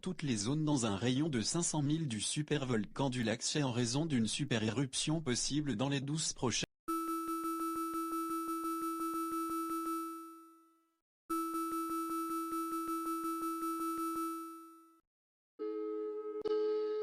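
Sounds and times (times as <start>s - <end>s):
rapidly pulsing electronic tone: 11.3s - 14.6s
steady two-note alert tone: 11.3s - 14.7s.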